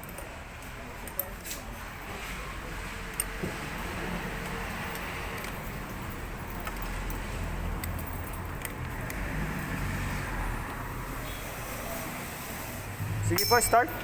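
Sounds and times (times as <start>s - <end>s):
vehicle engine rumbling: 3.4s - 14.0s.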